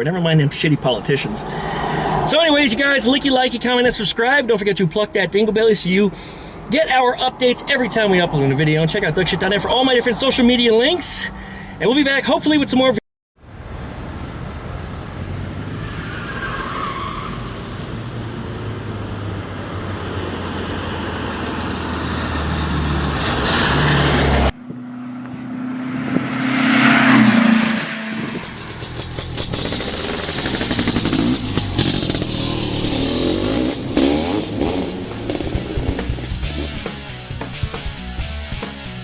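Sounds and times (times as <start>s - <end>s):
vehicle passing loudly: 1.2s - 2.9s, 13.5s - 37.2s
vehicle engine running: 13.4s - 16.3s, 17.3s - 23.4s, 28.0s - 38.6s.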